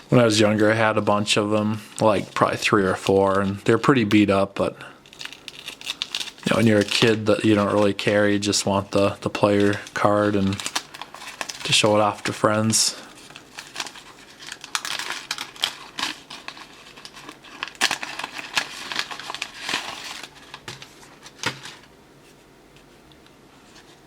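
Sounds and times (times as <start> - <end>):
trading cards rustling and clicking: 5.0 - 21.9.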